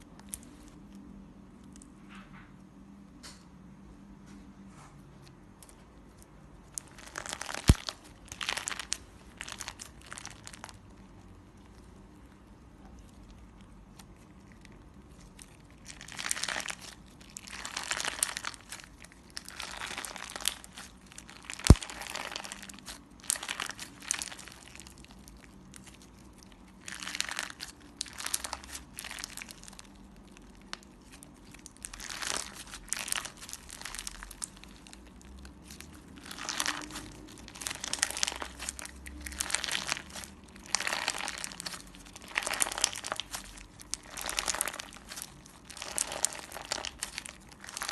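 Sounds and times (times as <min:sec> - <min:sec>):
slime crackling pops: 0:06.8 - 0:10.7, 0:15.8 - 0:26.1, 0:26.7 - 0:47.9.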